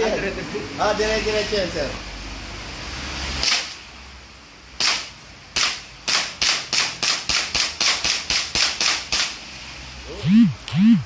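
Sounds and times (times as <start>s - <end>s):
airsoft pistol shots: 3.4s - 3.8s, 4.8s - 9.4s.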